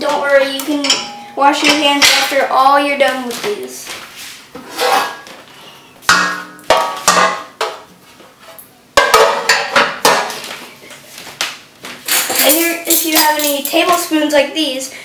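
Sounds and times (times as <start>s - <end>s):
pots and pans clanking: 0.6s - 2.4s, 6.1s - 7.8s, 9.0s - 10.5s.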